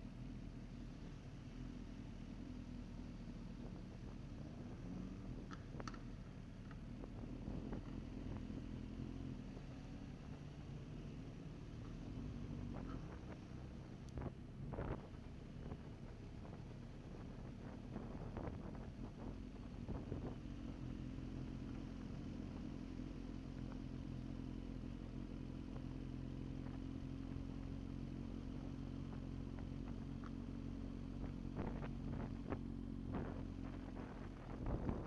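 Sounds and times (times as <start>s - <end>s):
motorcycle engine running: 0.0s - 35.0s.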